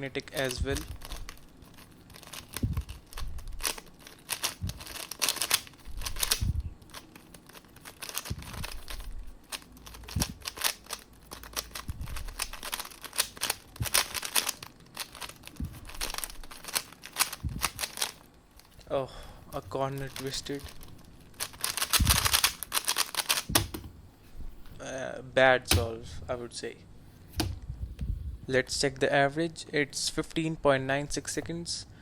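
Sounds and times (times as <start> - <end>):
puzzle cube clicking: 0.3 - 18.8, 19.9 - 23.8, 25.7 - 25.9.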